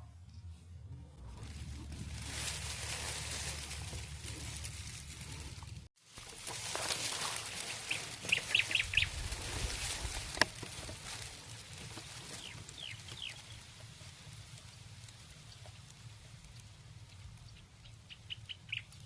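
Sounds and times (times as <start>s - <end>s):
small birds chirping: 7.1s - 10.2s, 12.0s - 13.7s, 17.0s - 19.0s.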